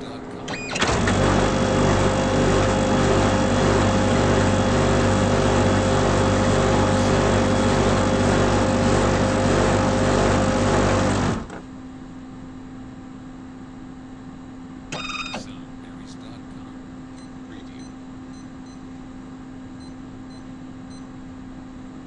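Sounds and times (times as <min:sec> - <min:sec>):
photocopier whirring: 0:00.0 - 0:11.6, 0:14.9 - 0:16.7.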